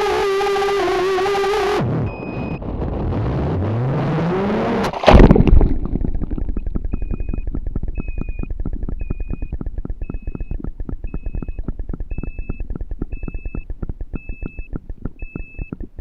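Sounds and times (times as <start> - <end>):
drone motor whine: 0.0 - 4.9, 6.4 - 16.0
drone crashing into brush: 4.4 - 7.0
rapid even ticking: 5.2 - 16.0.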